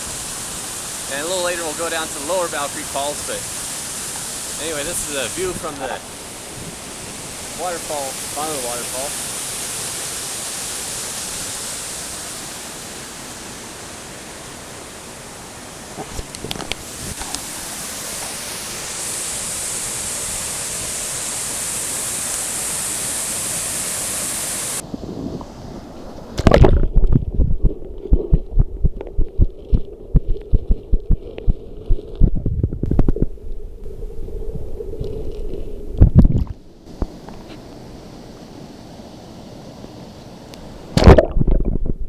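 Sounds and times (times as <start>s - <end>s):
waterfall rushing: 0.0s - 15.6s, 16.8s - 24.8s
low thumps on microphone: 26.4s - 34.0s, 35.8s - 37.2s, 41.0s - 42.0s.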